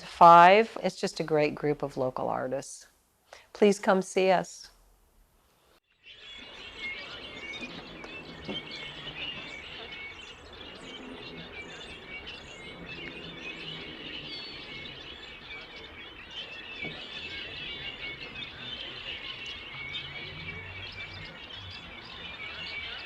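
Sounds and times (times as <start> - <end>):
birds chirping: 5.8 - 23.0.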